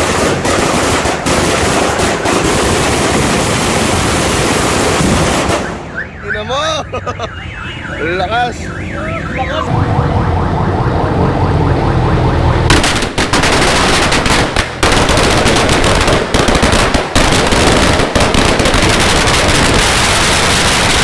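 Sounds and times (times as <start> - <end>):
rapid chain of sharp bangs: 0.0 - 5.9, 12.7 - 21.0
firecracker string exploding: 12.7 - 21.0.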